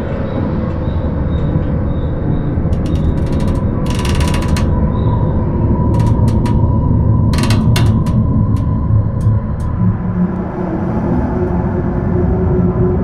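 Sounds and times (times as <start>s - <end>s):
low rumble of steel bridge: 0.0s - 13.0s
sharp metallic clicks: 2.7s - 5.2s, 5.9s - 9.8s.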